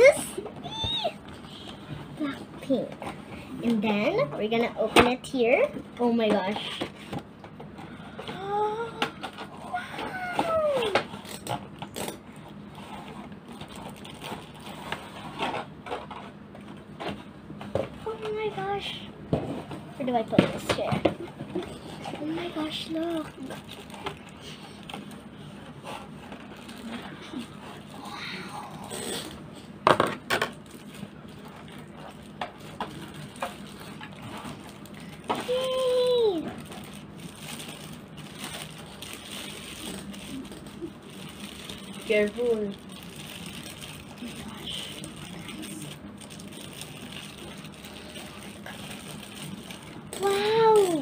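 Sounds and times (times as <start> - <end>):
low steady hum: 0.0 - 51.0
packaging rustling: 12.9 - 16.0, 21.8 - 28.1, 30.4 - 51.0.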